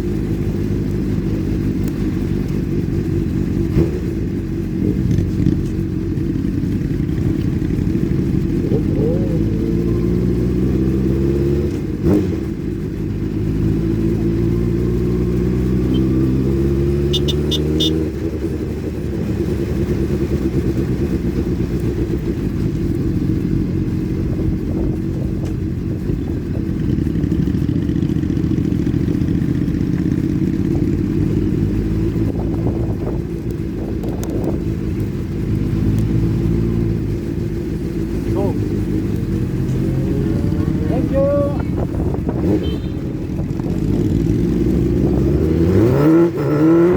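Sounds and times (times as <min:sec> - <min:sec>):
motorcycle engines revving: 0:00.0 - 0:46.9
short high beeps: 0:17.1 - 0:18.0.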